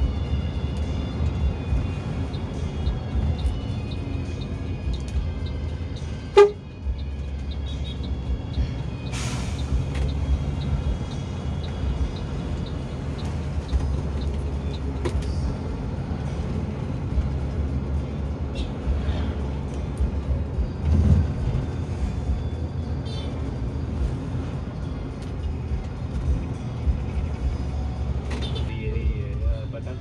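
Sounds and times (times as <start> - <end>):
bus engine and road rumble: 0.0 - 30.0
horn toot: 6.3 - 6.7.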